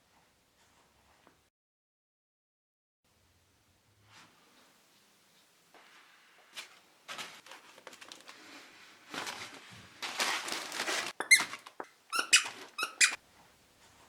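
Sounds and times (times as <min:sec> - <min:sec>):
scuffling and rustling: 0:05.4 - 0:11.6
high-pitched squeaks: 0:11.2 - 0:13.2.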